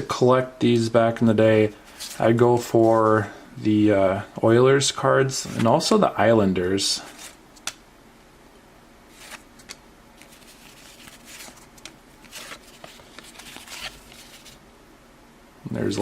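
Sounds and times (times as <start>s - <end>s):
cards flicking and rustling: 7.1s - 7.8s, 9.1s - 14.6s.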